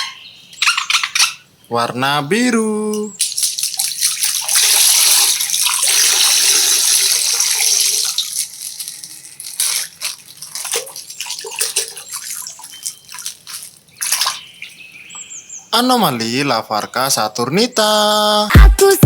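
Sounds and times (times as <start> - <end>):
plastic bag crinkling and tearing: 3.2 - 14.0
water gushing and splashing: 3.2 - 14.6.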